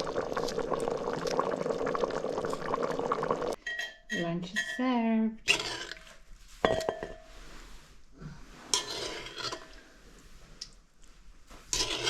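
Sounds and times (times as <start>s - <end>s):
cutlery scraping: 8.7s - 9.8s, 11.7s - 12.0s.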